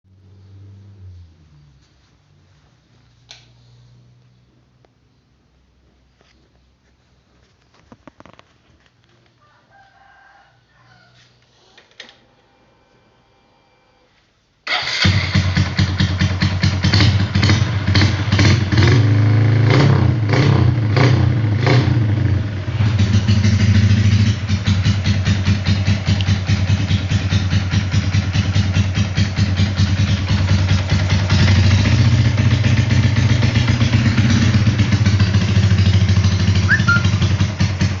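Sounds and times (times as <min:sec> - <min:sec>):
motorcycle engine revving: 0:14.7 - 0:38.0.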